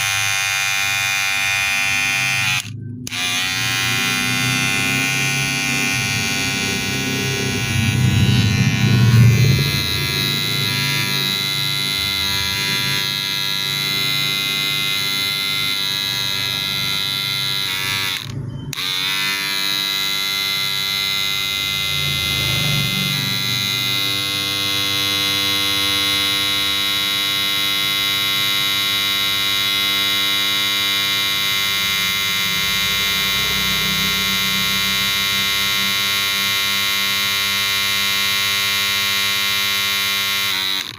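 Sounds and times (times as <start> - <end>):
hair clipper buzzing: 0.0 - 40.9.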